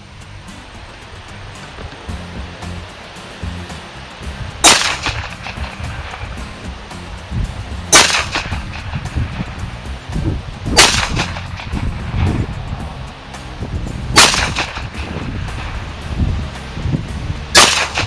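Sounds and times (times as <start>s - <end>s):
pistol shots: 4.6s - 5.6s, 7.9s - 8.6s, 10.8s - 11.5s, 14.2s - 14.9s, 17.6s - 18.0s.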